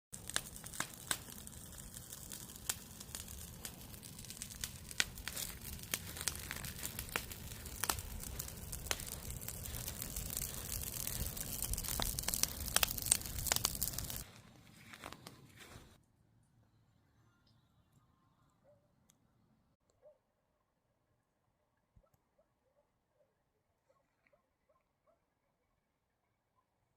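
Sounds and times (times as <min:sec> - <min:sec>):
campfire crackling and popping: 0:00.1 - 0:16.0.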